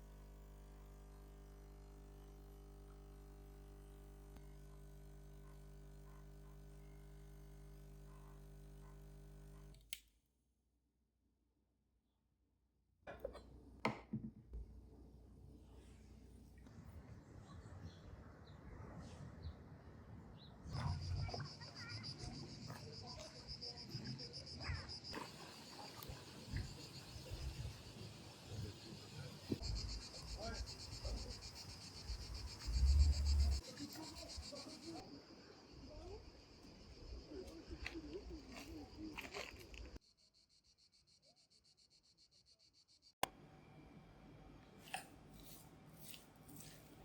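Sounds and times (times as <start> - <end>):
faint outdoor noise: 0.0 - 9.8, 13.2 - 47.0
crickets trilling: 20.8 - 43.1
insect chirping: 20.8 - 43.2.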